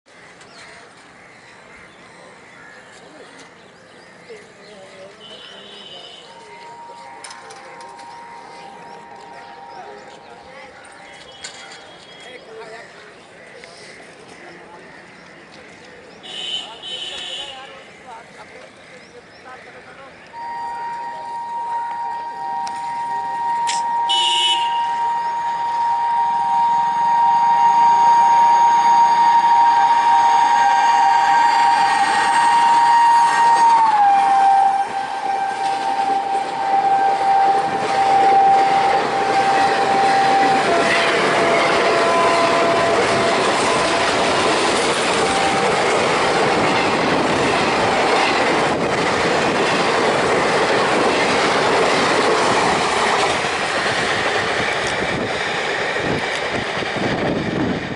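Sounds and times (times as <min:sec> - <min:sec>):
two-note locomotive horn: 0:05.2 - 0:10.3, 0:20.3 - 0:46.1
train wheels clattering on rails: 0:37.6 - 0:57.9.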